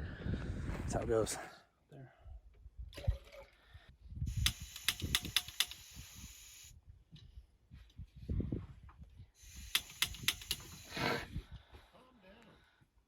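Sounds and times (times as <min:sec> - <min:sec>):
gas burner hissing: 0:04.3 - 0:06.7, 0:09.4 - 0:11.2
igniter clicking: 0:04.4 - 0:05.8, 0:09.7 - 0:10.7.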